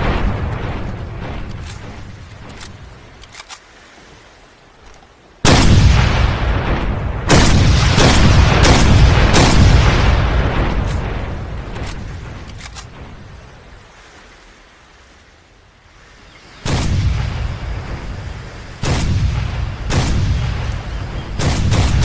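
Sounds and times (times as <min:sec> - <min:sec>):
rifle shots with rolling boom: 0:05.4 - 0:13.1, 0:16.6 - 0:17.9, 0:18.8 - 0:22.0
sharp cracks in echo: 0:05.5 - 0:13.0, 0:18.8 - 0:22.0.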